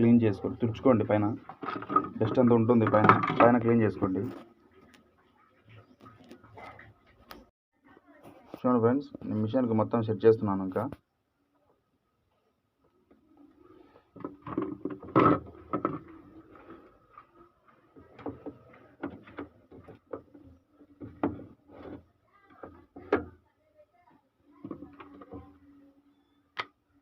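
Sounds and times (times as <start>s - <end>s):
machine parts knocking and scraping: 1.4s - 3.6s.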